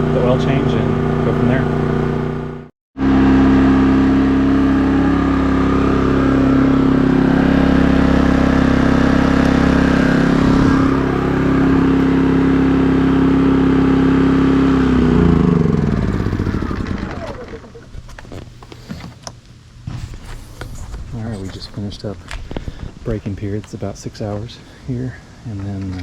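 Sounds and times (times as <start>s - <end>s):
generator engine running: 0.0s - 19.2s.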